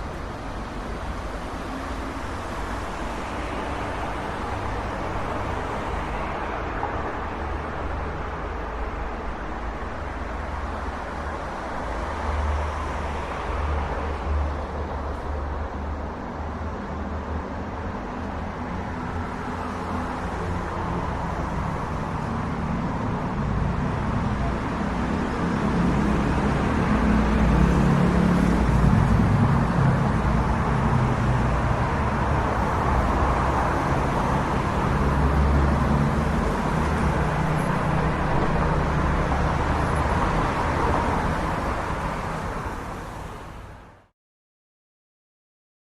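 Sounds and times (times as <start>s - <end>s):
road traffic rumble: 0.0s - 44.1s.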